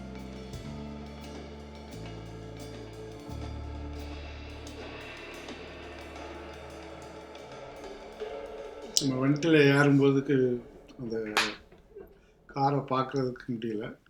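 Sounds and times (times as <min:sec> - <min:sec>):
hi-hat: 0:00.0 - 0:10.0
sustained bass notes: 0:00.0 - 0:11.6.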